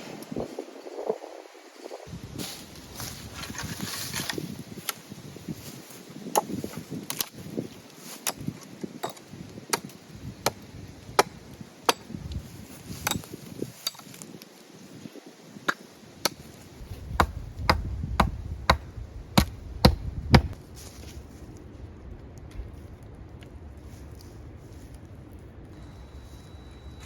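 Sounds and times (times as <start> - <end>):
hand tool striking wood: 17.2 - 20.6.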